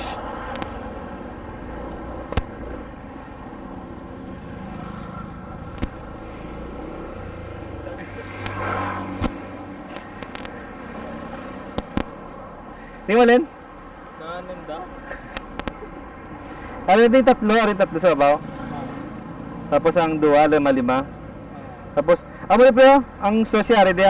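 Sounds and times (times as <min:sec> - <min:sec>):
vehicle engine running: 0:00.0 - 0:24.0
sharp clicks: 0:00.5 - 0:00.8, 0:02.3 - 0:02.8, 0:05.7 - 0:06.1, 0:08.0 - 0:10.6, 0:11.7 - 0:12.2, 0:15.3 - 0:15.8.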